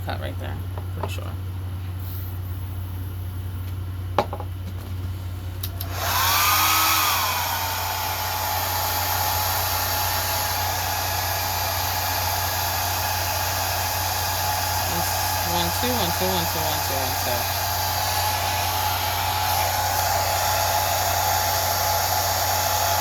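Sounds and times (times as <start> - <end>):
hair dryer blowing: 5.6 - 23.0.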